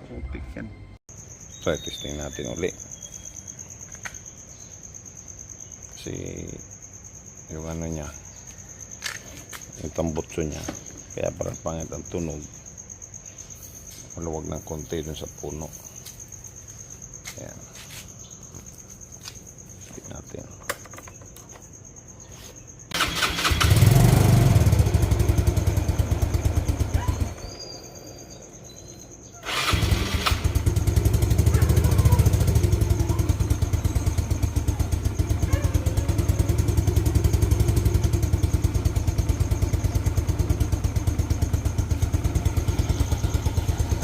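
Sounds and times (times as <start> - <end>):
scooter engine starting and revving: 22.9 - 28.4, 29.4 - 44.0
scooter engine idling: 23.0 - 28.6, 29.4 - 44.0.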